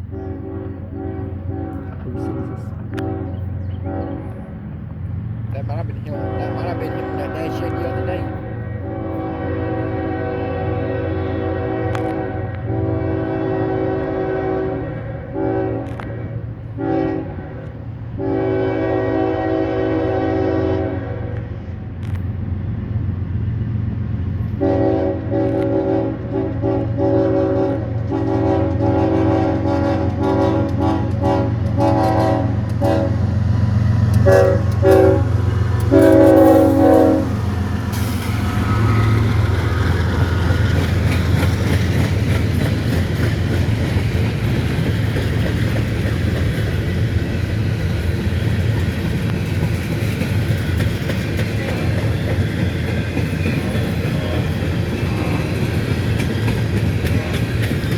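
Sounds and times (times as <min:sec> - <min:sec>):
rolling clatter of train cars: 0:00.0 - 0:57.9
train engine rumble: 0:00.0 - 0:57.9
locomotive air horn blasts: 0:00.1 - 0:04.4, 0:06.0 - 0:21.5, 0:24.6 - 0:33.4, 0:34.0 - 0:40.1.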